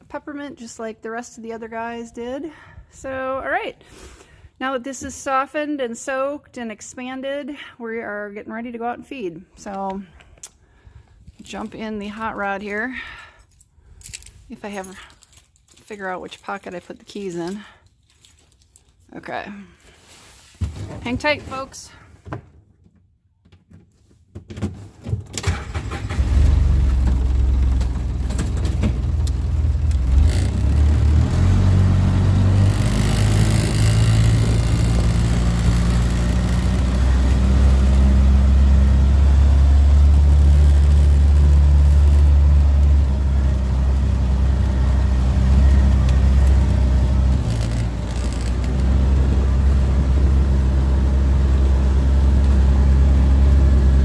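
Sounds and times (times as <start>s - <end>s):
small engine starting and running: 25.4s - 54.0s
starter clicks: 46.0s - 49.0s.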